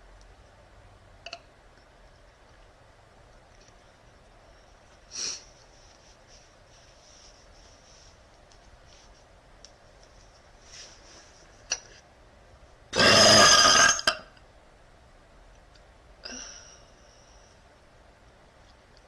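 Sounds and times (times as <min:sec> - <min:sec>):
woman burping: 0:13.0 - 0:14.3.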